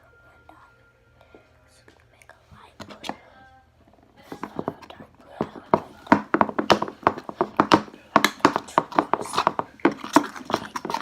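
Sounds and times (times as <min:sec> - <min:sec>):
spoon stirring sticky slime: 0:04.2 - 0:11.0.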